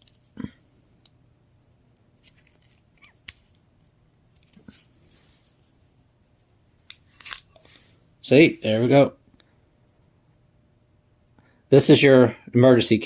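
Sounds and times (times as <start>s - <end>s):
soft scraping rustle: 4.4s - 9.1s.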